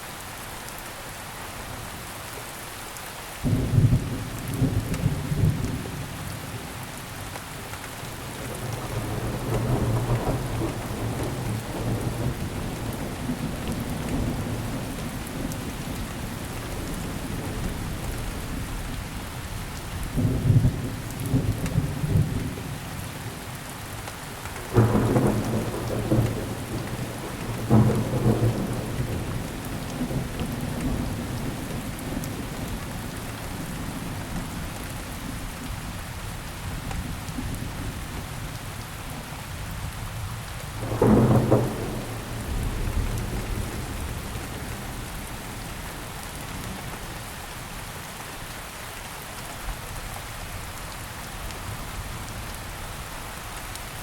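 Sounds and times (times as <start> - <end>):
steady rain hissing: 0.0 - 54.0
thunder rumbling: 8.3 - 18.7, 24.6 - 34.1, 40.8 - 46.8.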